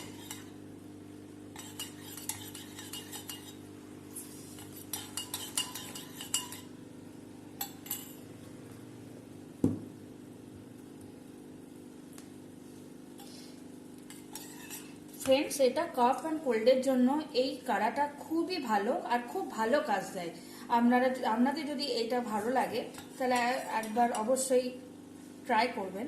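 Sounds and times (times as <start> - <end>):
metal spoon clinking against vessel: 1.6 - 3.6, 4.6 - 6.7, 7.6 - 8.2
dull knock: 9.6 - 9.9.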